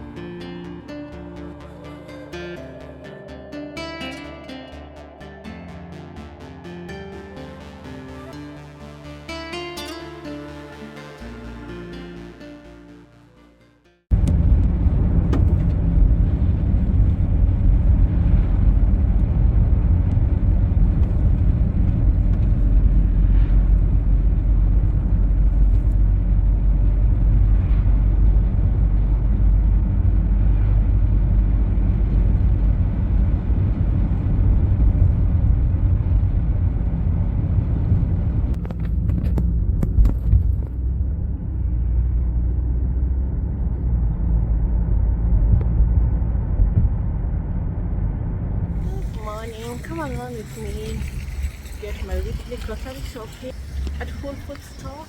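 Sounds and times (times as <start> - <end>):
car road and engine rumble: 14.1 - 55.0.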